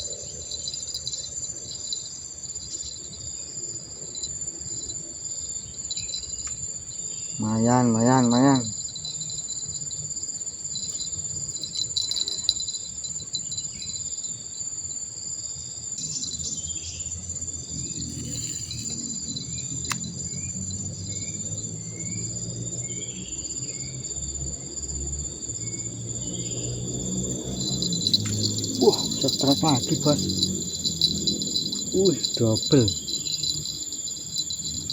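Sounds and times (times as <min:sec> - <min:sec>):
insects chirring: 0:00.0 - 0:34.9
short rising chirps: 0:26.1 - 0:34.9.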